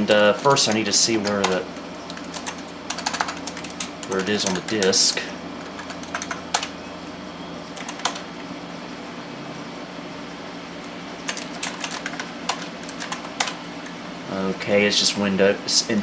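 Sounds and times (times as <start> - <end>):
steady low hum: 0.0 - 16.0
computer keyboard typing: 0.5 - 6.8, 7.7 - 8.3, 10.8 - 14.0.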